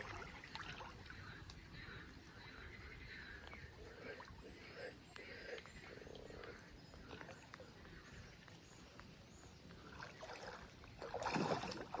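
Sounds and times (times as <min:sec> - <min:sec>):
swimmer splashing water: 0:00.0 - 0:01.1, 0:09.9 - 0:12.0.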